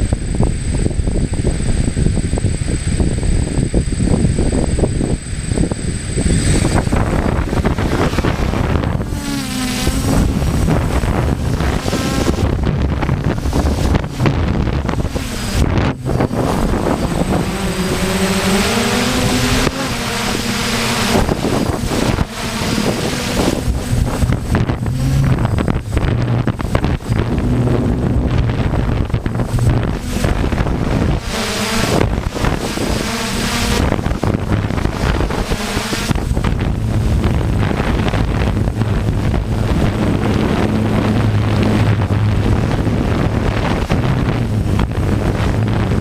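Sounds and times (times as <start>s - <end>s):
drone motors whining: 0.0s - 46.0s
wind buffeting microphone: 0.0s - 46.0s.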